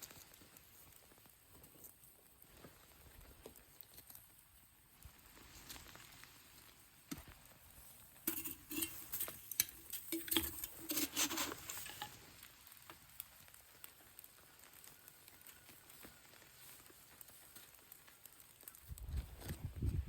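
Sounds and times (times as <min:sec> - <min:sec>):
steak and vegetables frying: 0:00.0 - 0:19.1
utensil clicking and scraping pan: 0:08.2 - 0:12.5.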